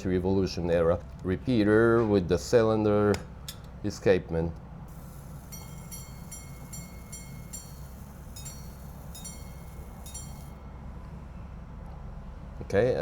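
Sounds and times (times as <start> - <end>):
pocket watch gong strikes: 4.9 - 10.6.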